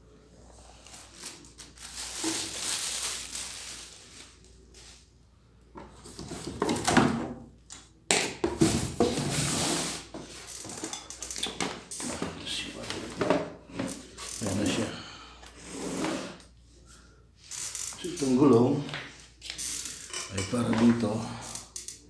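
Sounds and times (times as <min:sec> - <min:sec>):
plastic parts and packaging handled: 0:00.7 - 0:05.0.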